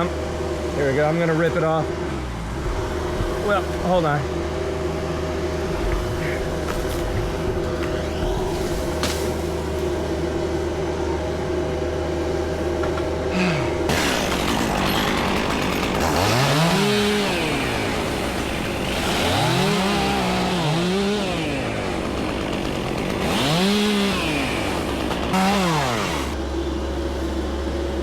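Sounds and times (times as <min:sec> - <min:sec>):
chainsaw revving cutting wood: 0:12.6 - 0:26.4.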